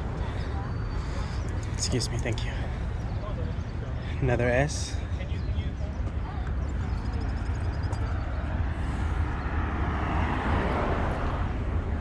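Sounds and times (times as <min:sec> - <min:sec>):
car engines humming: 0:00.0 - 0:12.0
vehicle passing by: 0:08.0 - 0:12.0.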